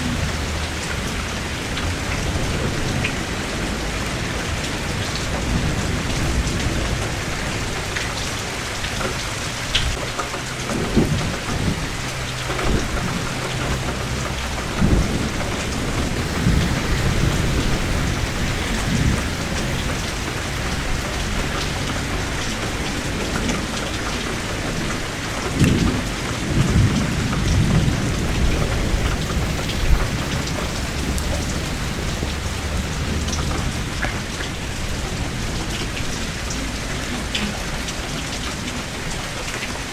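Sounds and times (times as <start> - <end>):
thunder rumbling: 0.0 - 3.6, 10.5 - 36.0
heavy rain: 0.0 - 39.9.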